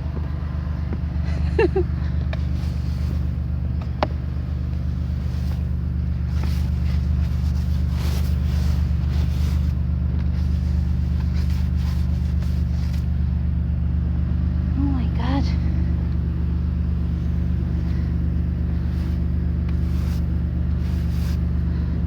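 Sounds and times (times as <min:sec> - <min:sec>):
car engine idling: 0:00.0 - 0:22.0
rustling: 0:02.4 - 0:13.2, 0:17.0 - 0:21.9.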